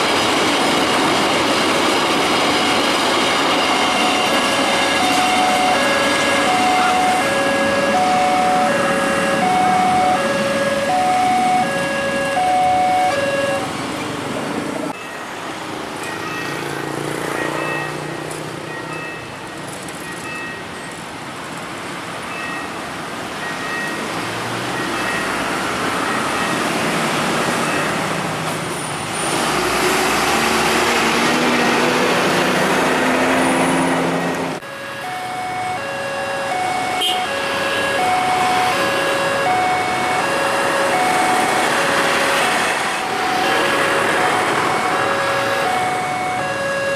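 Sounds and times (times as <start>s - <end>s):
train rushing past: 0.0s - 14.9s, 24.1s - 35.8s, 36.5s - 46.9s
level-crossing alarm two-tone: 2.6s - 13.7s, 17.3s - 18.1s, 34.6s - 46.9s.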